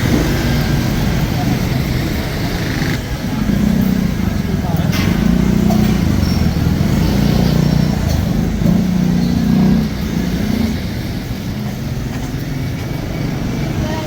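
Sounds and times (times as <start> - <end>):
vehicle engines passing: 0.0 - 14.0.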